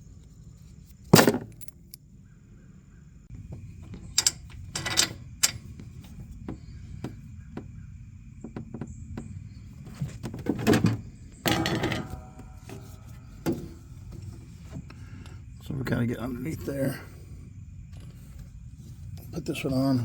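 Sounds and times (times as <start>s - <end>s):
metal parts clicking and scraping: 1.1s - 2.0s, 3.9s - 5.7s, 10.5s - 15.3s.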